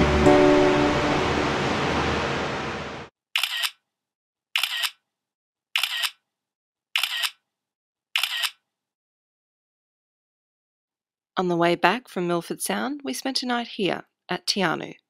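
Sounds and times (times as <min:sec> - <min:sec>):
music: 0:00.0 - 0:02.4
camera shutter clicks: 0:03.4 - 0:03.8, 0:04.6 - 0:05.0, 0:05.8 - 0:06.2, 0:07.0 - 0:07.4, 0:08.2 - 0:08.6.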